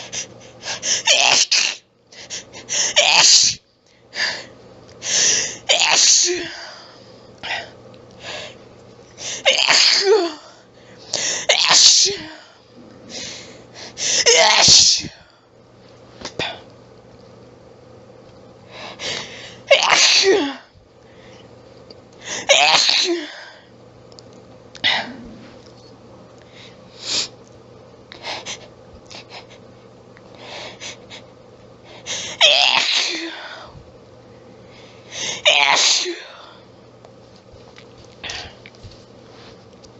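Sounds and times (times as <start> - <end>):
person sneezing: 0.8 - 1.8, 2.8 - 3.6, 5.2 - 6.6, 9.2 - 10.5, 11.2 - 12.5, 14.0 - 15.2, 19.2 - 20.7, 22.3 - 23.4, 24.8 - 25.5, 32.2 - 33.4, 35.2 - 36.4.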